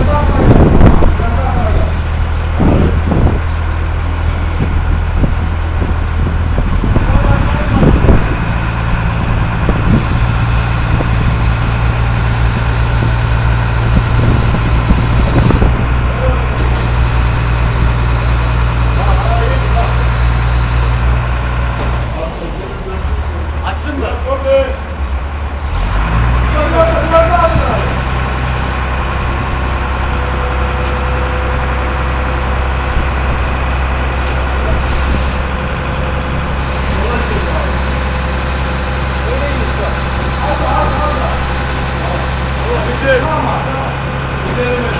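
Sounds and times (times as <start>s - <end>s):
high whine: 0.0s - 21.3s, 31.4s - 44.0s
machine drone: 0.0s - 23.8s, 24.4s - 44.9s
washing machine humming: 29.6s - 44.9s.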